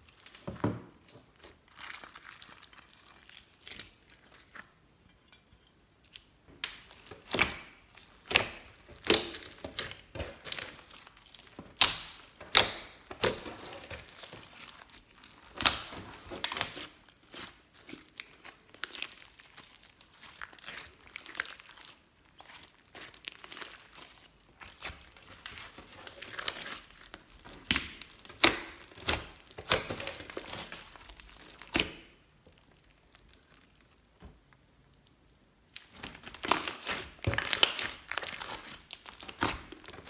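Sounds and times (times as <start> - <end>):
slime squishing and popping: 6.6 - 33.6, 35.7 - 40.0.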